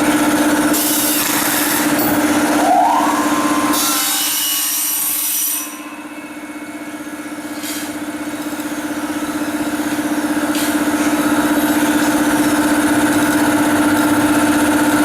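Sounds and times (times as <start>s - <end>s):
machine motor hum: 0.0s - 15.0s
high-pitched cutting noise: 0.8s - 7.9s.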